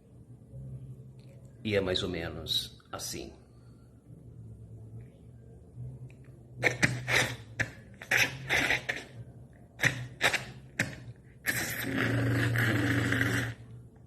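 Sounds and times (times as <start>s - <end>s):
breathy mouth bursts: 6.6s - 9.2s, 9.8s - 13.6s.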